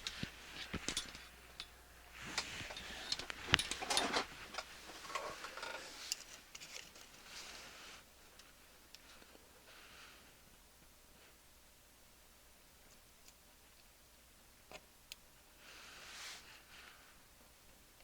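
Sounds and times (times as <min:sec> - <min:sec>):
rustling: 0:00.0 - 0:10.2.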